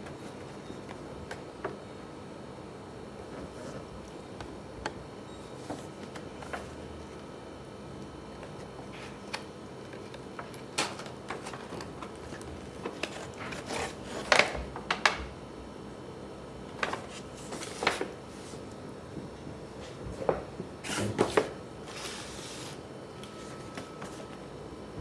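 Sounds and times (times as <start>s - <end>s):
clicks and taps of plastic packaging: 14.2s - 15.3s.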